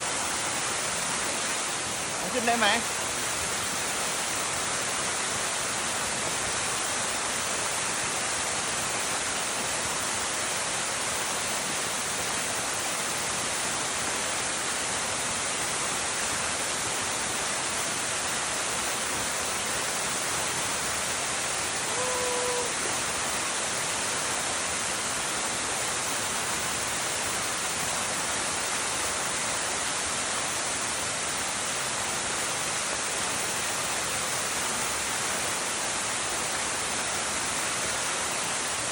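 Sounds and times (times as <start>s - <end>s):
waterfall rushing: 0.0s - 38.9s
brief pitched call: 21.9s - 22.8s.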